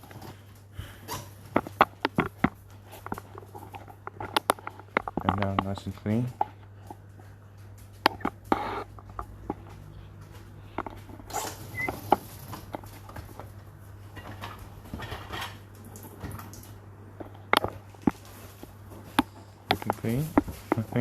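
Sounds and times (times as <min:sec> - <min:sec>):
steady low hum: 0:00.0 - 0:21.0
dishes clicking and rustling: 0:01.1 - 0:07.0, 0:14.1 - 0:21.0.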